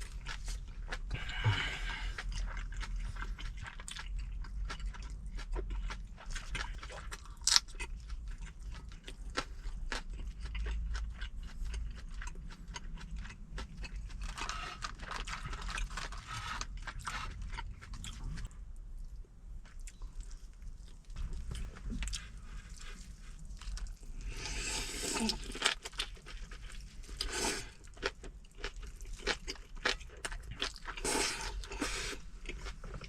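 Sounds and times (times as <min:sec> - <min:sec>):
chewing and crunching food: 0:00.0 - 0:33.0
low steady hum: 0:00.0 - 0:33.0.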